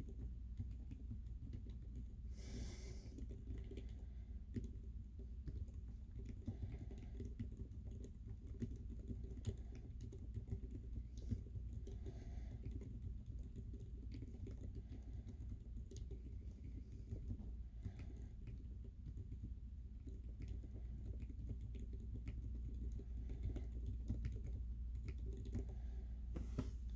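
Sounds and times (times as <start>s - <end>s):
quiet keyboard typing: 0.0s - 26.9s.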